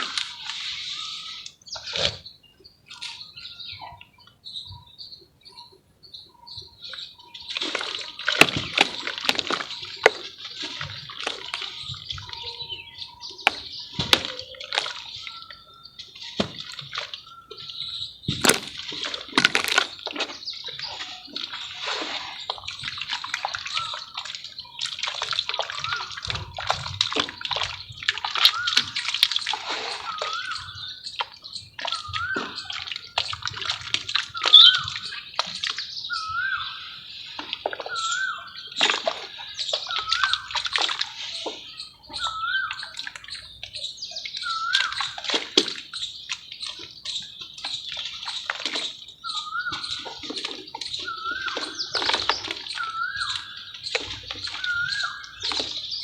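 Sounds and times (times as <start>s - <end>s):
mud splashing into water: 0.0s - 3.3s, 6.9s - 56.0s
mud crumbling: 7.4s - 30.5s, 37.3s - 56.0s.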